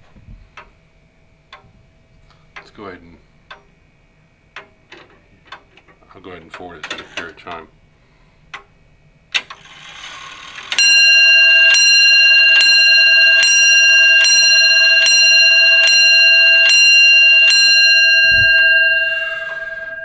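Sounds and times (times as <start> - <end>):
clock bell striking: 10.5 - 20.0.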